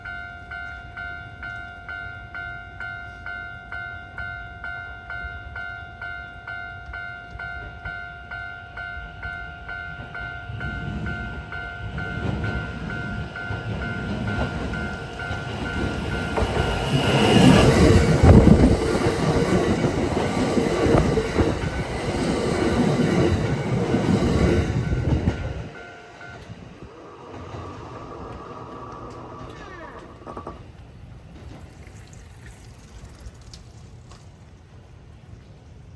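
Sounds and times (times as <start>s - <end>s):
level-crossing alarm ringing: 0.0s - 28.9s
train wheels clattering: 10.0s - 31.7s.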